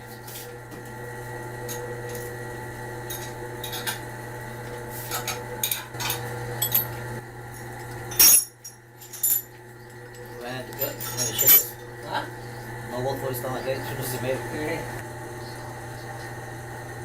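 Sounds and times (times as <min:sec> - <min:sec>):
steady mechanical hum: 0:00.0 - 0:17.0
metallic clinks and clicks: 0:10.7 - 0:11.7.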